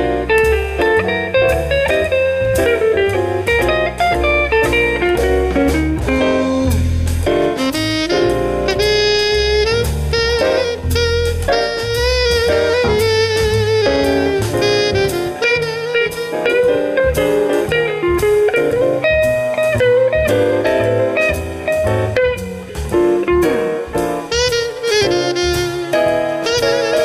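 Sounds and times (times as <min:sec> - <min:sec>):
bass line: 0:00.0 - 0:27.0
saxophone playing jazz melody: 0:01.8 - 0:19.2, 0:23.7 - 0:27.0.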